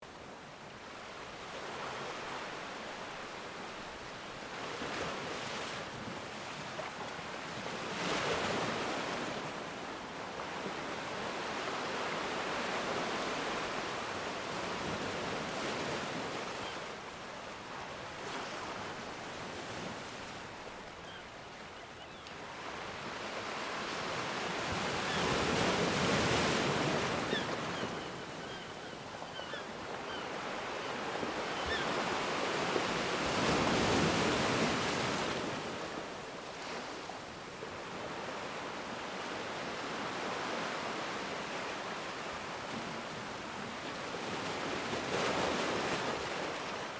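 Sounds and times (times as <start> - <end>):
ocean waves breaking: 22.1 - 37.1.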